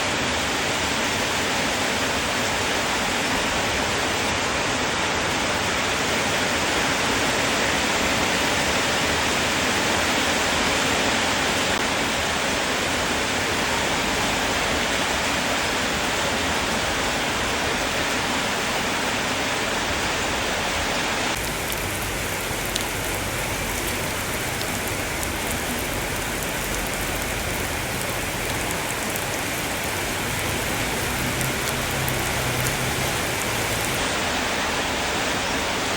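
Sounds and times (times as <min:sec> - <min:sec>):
steady rain hiss: 0:21.2 - 0:35.9
individual raindrop ticks: 0:21.4 - 0:34.0.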